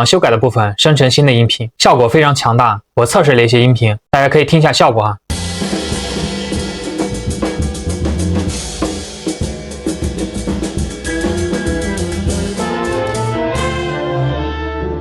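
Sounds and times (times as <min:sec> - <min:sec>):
orchestral music with drums and brass: 0:05.3 - 0:15.0.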